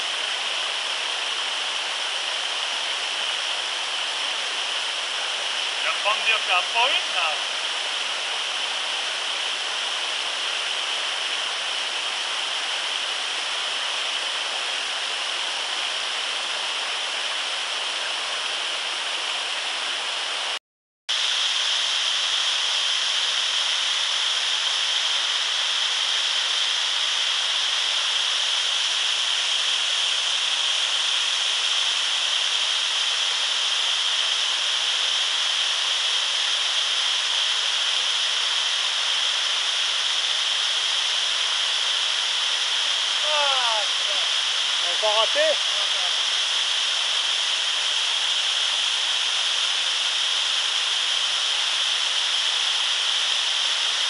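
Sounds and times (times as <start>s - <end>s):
mountain torrent rushing: 0.1s - 20.5s, 32.0s - 54.0s.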